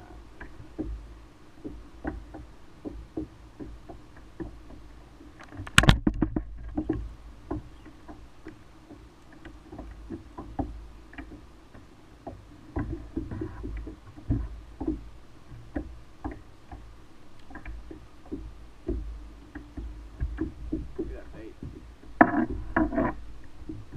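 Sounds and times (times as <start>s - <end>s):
gear knocking on a kayak: 0.0s - 23.9s.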